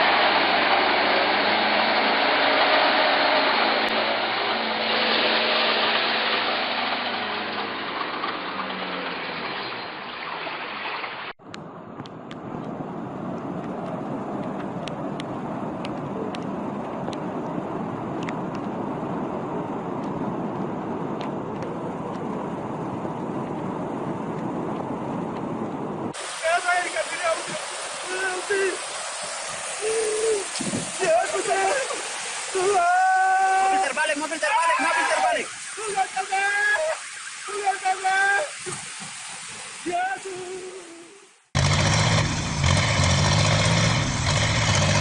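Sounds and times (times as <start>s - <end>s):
vehicle engine noise: 0.0s - 39.8s, 41.4s - 45.0s
steady rushing noise: 11.5s - 40.2s.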